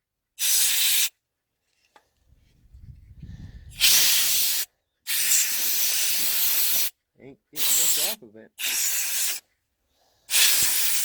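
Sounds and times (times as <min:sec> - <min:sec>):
compressed air hissing: 0:00.4 - 0:01.1, 0:03.3 - 0:06.9, 0:07.6 - 0:09.4, 0:10.3 - 0:11.0.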